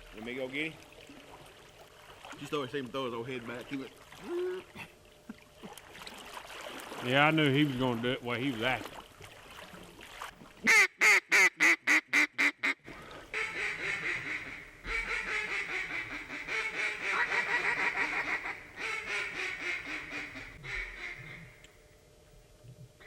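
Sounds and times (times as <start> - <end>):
duck call quacks: 10.6 - 21.6.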